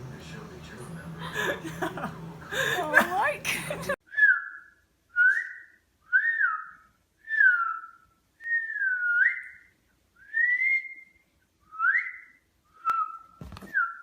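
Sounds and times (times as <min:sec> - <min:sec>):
person whistling: 0:05.2 - 0:06.6, 0:08.4 - 0:09.6.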